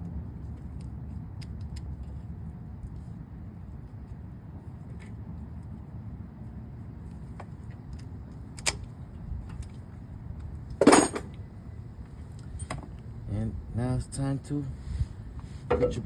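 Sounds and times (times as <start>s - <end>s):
steady low rumble: 0.0s - 16.0s
brake parts clattering: 10.7s - 11.4s, 15.5s - 16.0s.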